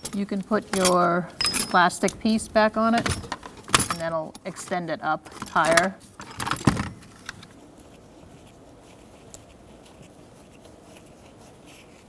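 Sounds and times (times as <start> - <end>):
plastic parts clicking: 0.0 - 7.5.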